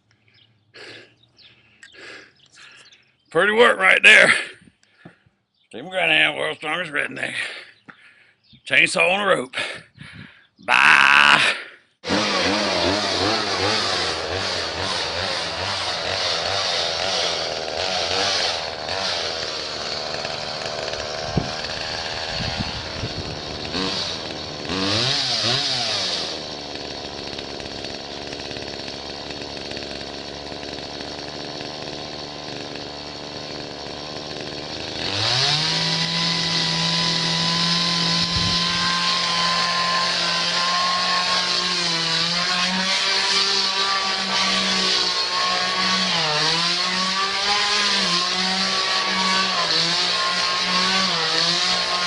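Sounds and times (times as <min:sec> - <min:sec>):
chainsaw engine revving: 0:10.7 - 0:52.0.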